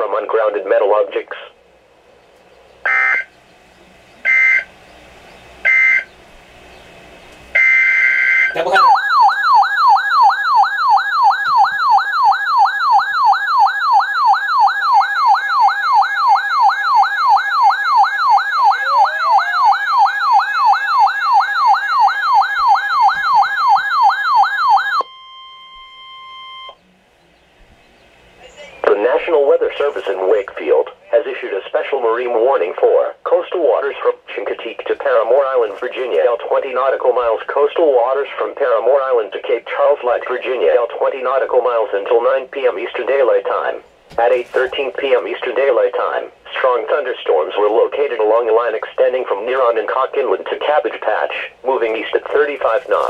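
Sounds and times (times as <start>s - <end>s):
steady attention tone: 0.0s - 32.9s
chirping data bursts: 2.0s - 30.6s
warbling alert siren: 2.8s - 3.4s, 4.2s - 4.8s, 5.6s - 6.2s, 7.5s - 26.9s.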